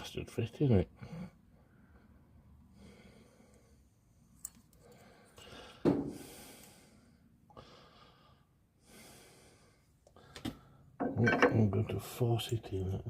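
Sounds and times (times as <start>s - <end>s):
man breathing heavily: 0.9s - 4.0s, 4.8s - 11.0s.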